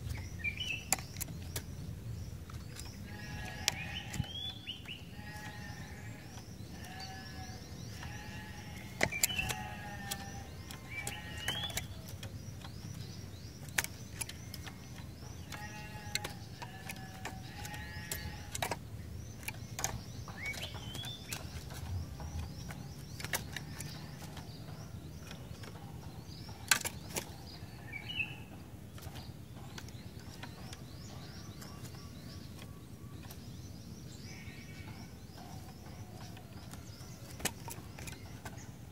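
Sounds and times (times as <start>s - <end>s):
sharp clicks: 2.7s - 24.5s
bird calling in repeated notes: 3.0s - 12.1s.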